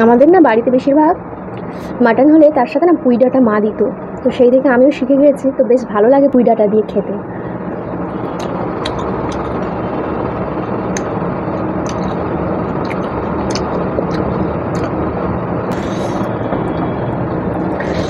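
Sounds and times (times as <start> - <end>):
low background rumble: 0.0 - 18.0
wet chewing clicks: 8.3 - 9.8, 11.8 - 15.0.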